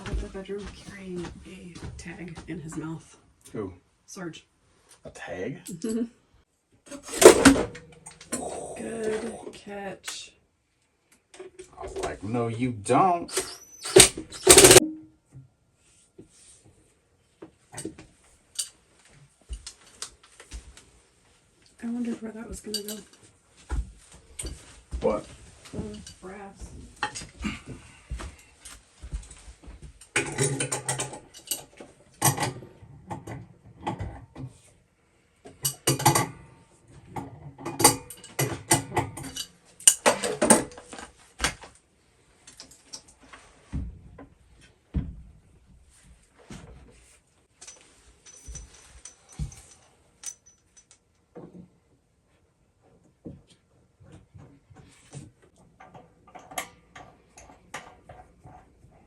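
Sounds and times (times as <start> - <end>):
tools clicking and knocking: 6.9 - 8.5, 13.3 - 14.8, 17.8 - 18.8, 30.0 - 34.6, 35.5 - 36.4, 37.1 - 41.5, 47.6 - 51.6, 55.4 - 58.8
loud clatter: 13.3 - 14.8.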